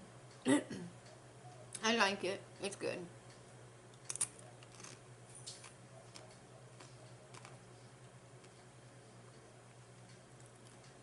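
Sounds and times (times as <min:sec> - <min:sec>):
faint steady hum: 0:00.0 - 0:11.0
clicks from chewing food: 0:04.0 - 0:07.6.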